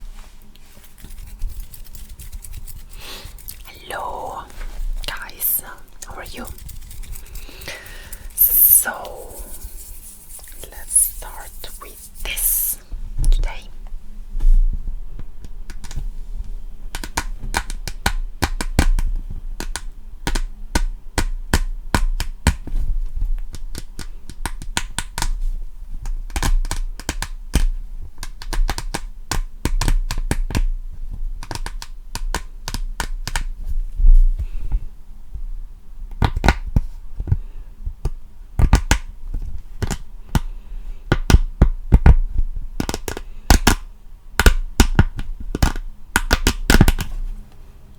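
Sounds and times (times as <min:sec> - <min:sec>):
rapid tapping and clicking: 0:06.4 - 0:08.4.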